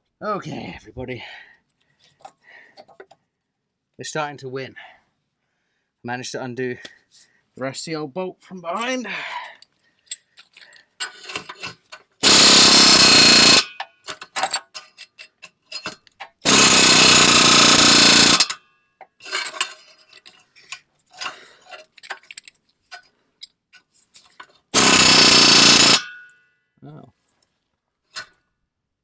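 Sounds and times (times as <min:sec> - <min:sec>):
metallic tool clicks and clanks: 0:10.1 - 0:26.4
impact wrench hammering: 0:12.2 - 0:13.9, 0:16.4 - 0:18.6, 0:24.8 - 0:26.3.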